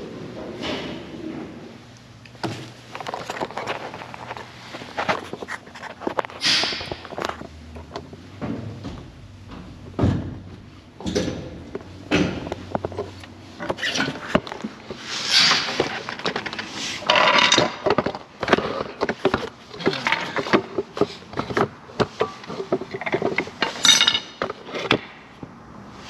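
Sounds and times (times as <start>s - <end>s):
metal tools clinking and knocking: 22.2s - 25.0s.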